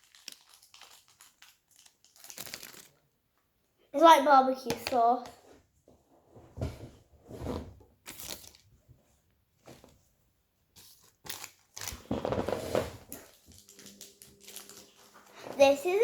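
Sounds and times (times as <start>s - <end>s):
plastic packaging crinkling: 0.0s - 3.0s, 10.8s - 16.0s.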